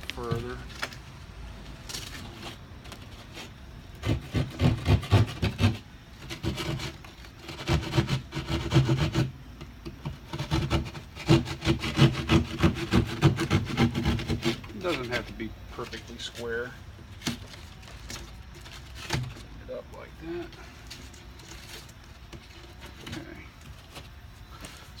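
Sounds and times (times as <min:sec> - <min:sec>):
saw cutting through drywall: 0:03.3 - 0:09.4, 0:10.1 - 0:16.7.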